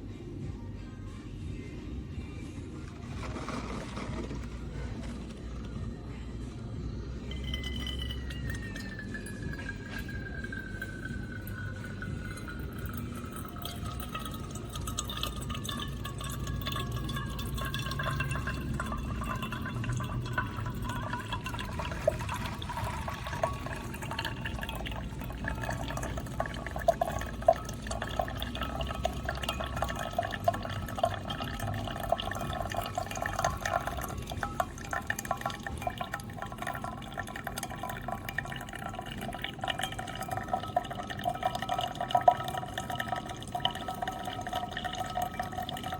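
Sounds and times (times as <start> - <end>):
coffee maker dispensing coffee: 3.0 - 5.8, 7.2 - 45.9
small irregular drips: 7.3 - 45.9.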